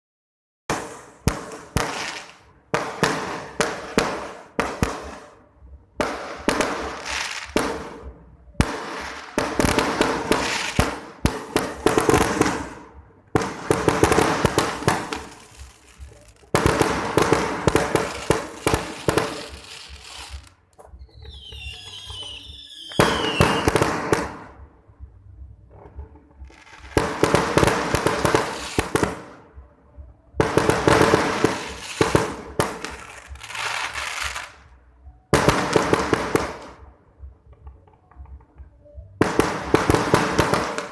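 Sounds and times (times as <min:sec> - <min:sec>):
fireworks crackling bangs: 0:00.7 - 0:05.3, 0:06.0 - 0:24.6, 0:25.7 - 0:29.4, 0:30.4 - 0:34.6
falling firework whistles: 0:18.0 - 0:24.0.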